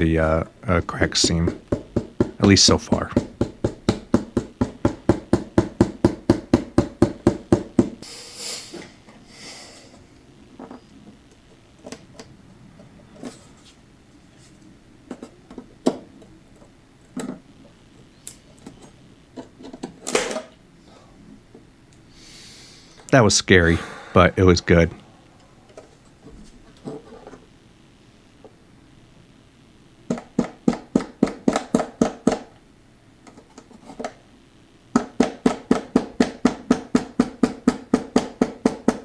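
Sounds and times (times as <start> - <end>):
tapping on wood: 1.2 - 8.0.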